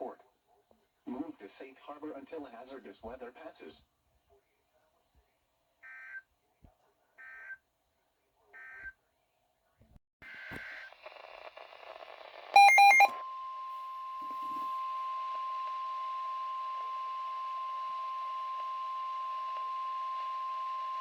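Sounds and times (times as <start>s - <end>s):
radio hiss: 1.1s - 3.8s, 10.2s - 12.6s
digital data tones: 12.6s - 13.1s
steady alert tone: 12.6s - 13.1s.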